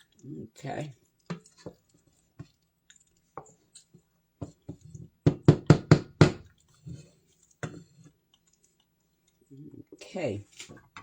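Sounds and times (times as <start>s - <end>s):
utensil knocking on cooking pot: 5.2s - 6.5s.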